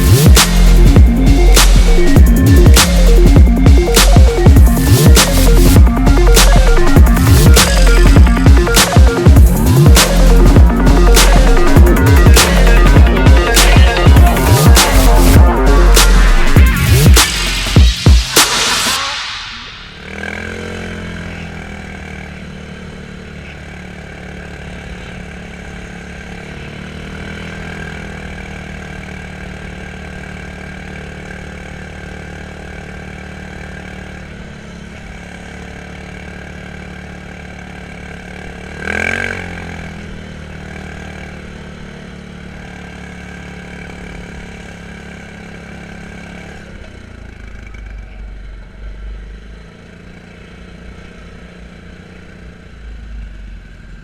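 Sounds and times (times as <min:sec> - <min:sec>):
low rumble: 0:00.0 - 0:20.2
quad bike engine idling: 0:19.9 - 0:54.0.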